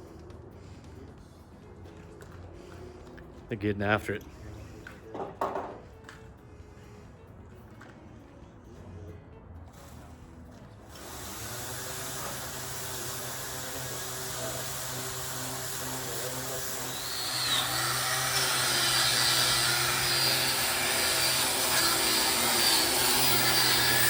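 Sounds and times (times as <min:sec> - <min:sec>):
power sander on steel: 0:10.9 - 0:24.0.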